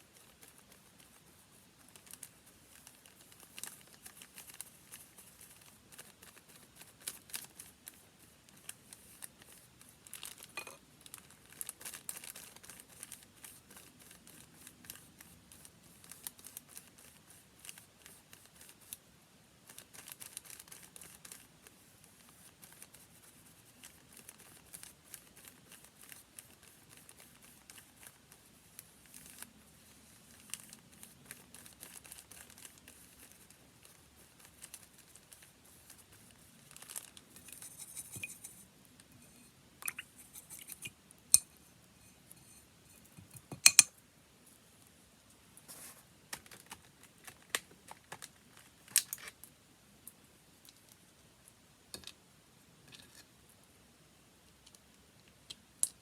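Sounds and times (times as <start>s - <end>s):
small ticks and scrapes: 0.0s - 45.0s, 45.6s - 52.2s, 52.8s - 53.4s
paper crinkling and rustling: 0.1s - 19.0s, 19.6s - 38.6s, 45.7s - 49.4s.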